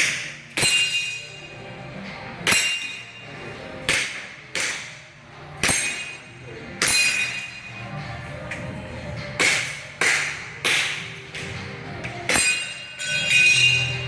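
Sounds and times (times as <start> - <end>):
pistol shots hitting steel targets: 0.0 - 1.4, 2.4 - 3.2, 3.8 - 5.0, 5.6 - 7.5, 9.4 - 11.5, 12.2 - 14.0.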